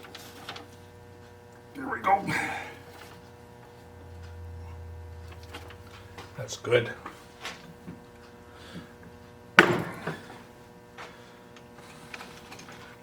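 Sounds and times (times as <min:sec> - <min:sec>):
faint steady hum: 0:00.0 - 0:13.0
sharp knock of hard object: 0:09.6 - 0:10.2.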